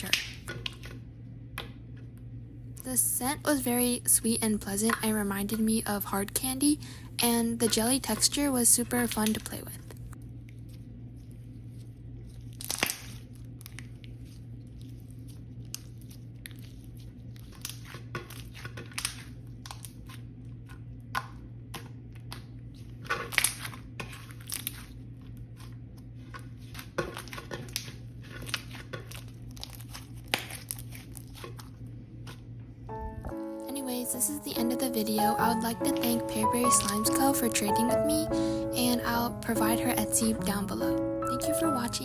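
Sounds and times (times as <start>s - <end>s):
slime clicks and crackles: 12.3s - 20.2s, 27.1s - 31.6s.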